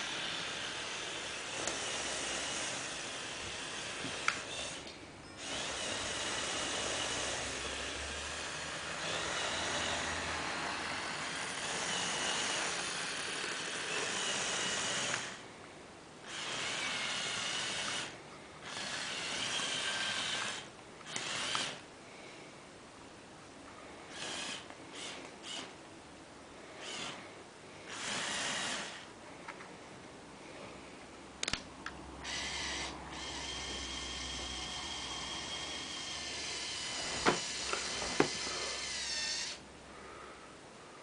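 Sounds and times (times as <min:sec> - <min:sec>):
toy electric motors whirring: 0:00.0 - 0:15.4, 0:16.3 - 0:21.8, 0:24.1 - 0:25.8, 0:26.8 - 0:29.1, 0:32.2 - 0:39.6.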